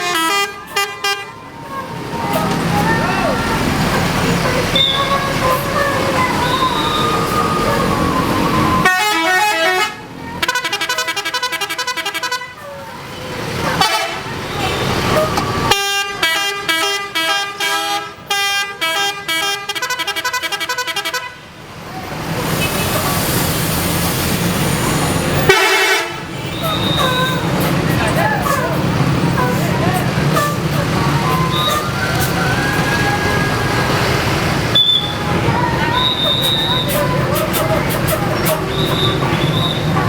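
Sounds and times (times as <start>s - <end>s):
musical bus air horns: 0.0s - 1.4s, 8.8s - 12.8s, 13.8s - 21.6s, 25.3s - 40.0s
road noise: 0.0s - 40.0s
onlookers: 0.5s - 8.9s, 21.8s - 40.0s.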